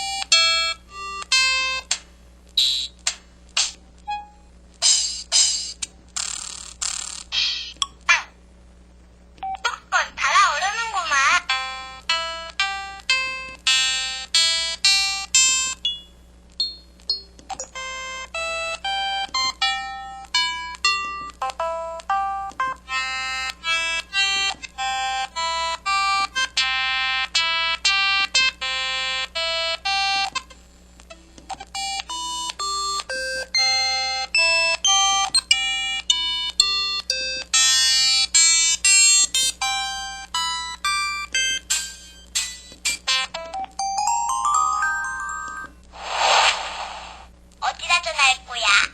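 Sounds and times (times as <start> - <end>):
polyphonic phone ringtone: 43.1 - 45.8.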